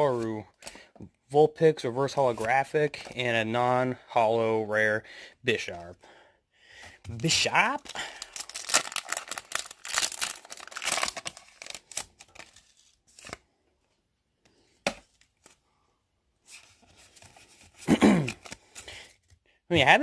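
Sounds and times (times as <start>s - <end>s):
foil wrapper tearing and crinkling: 7.4s - 13.4s.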